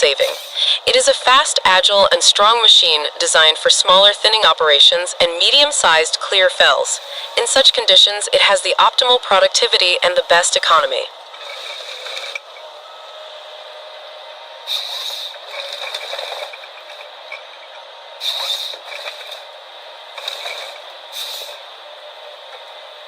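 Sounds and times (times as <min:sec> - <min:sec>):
forestry harvester drone: 0:00.0 - 0:23.0
harsh hissing bursts: 0:20.2 - 0:21.6.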